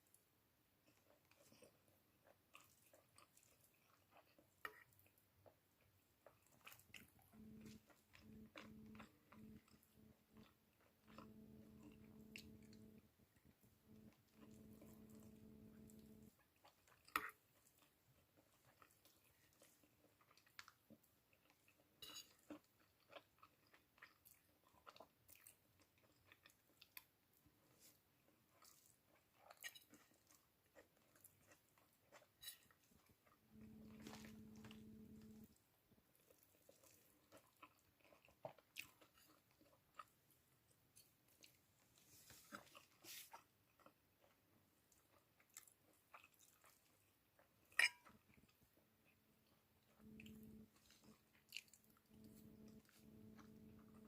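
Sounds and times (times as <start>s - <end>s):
person chewing food: 0.8s - 54.0s
low hum: 7.2s - 16.4s, 33.5s - 35.6s, 50.0s - 54.0s.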